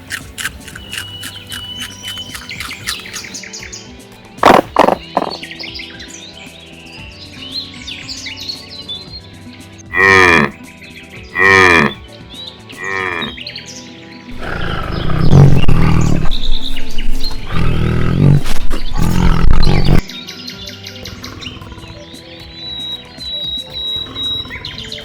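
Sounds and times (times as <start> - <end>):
cattle mooing: 9.9 - 10.6, 11.4 - 12.0, 12.8 - 13.4, 14.4 - 20.1.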